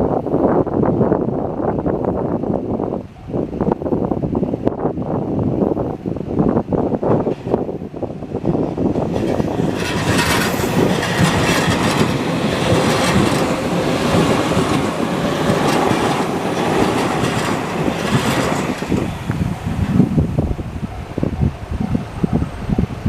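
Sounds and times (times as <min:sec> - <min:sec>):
electric train passing: 0:07.0 - 0:23.0
wheels clattering over rail joints: 0:08.4 - 0:20.2.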